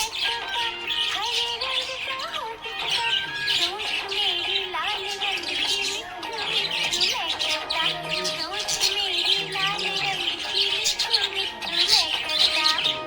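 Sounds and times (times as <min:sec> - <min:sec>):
background music: 0:00.0 - 0:13.0
budgie chirping and chattering: 0:00.0 - 0:13.0.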